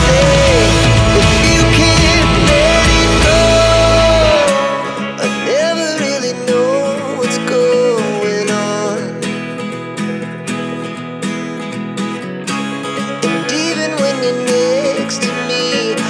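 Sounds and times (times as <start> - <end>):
wavering melody line: 0.0 - 5.2
strummed acoustic guitar: 0.0 - 16.0.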